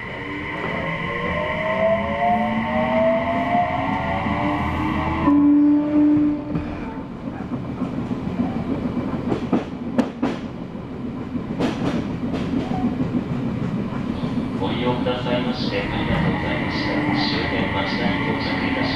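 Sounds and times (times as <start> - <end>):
wheel and track rumble: 6.0 - 18.9.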